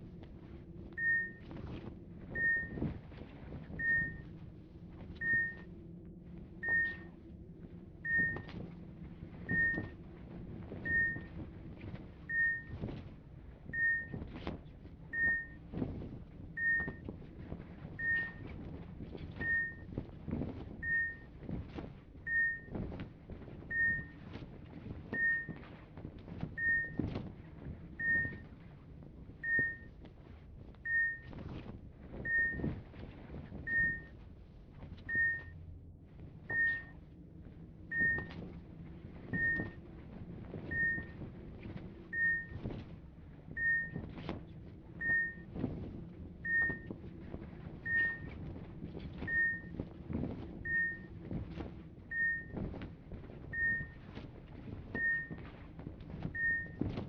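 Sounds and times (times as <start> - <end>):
faint knocks and rustles: 0.0 - 57.0
low hum: 0.0 - 57.0
medical equipment beeping: 1.0 - 3.1, 3.7 - 4.4, 5.1 - 5.8, 6.5 - 7.2, 8.0 - 8.6, 9.4 - 10.0, 10.8 - 11.4, 12.2 - 12.8, 13.7 - 14.2, 15.1 - 15.7, 16.5 - 17.1, 17.9 - 18.6, 19.3 - 19.9, 20.8 - 21.4, 22.3 - 22.8, 23.7 - 24.3, 25.1 - 25.7, 26.5 - 27.2, 27.9 - 28.5, 29.4 - 30.0, 30.8 - 31.4, 32.2 - 32.8, 33.6 - 34.2, 35.1 - 35.6, 36.5 - 37.0, 37.9 - 38.5, 39.3 - 39.8, 40.7 - 41.3, 42.1 - 42.8, 43.6 - 44.3, 44.9 - 45.6, 46.4 - 47.0, 47.8 - 48.4, 49.2 - 49.8, 50.6 - 51.3, 52.1 - 52.7, 53.5 - 54.1, 55.0 - 55.5, 56.3 - 57.0.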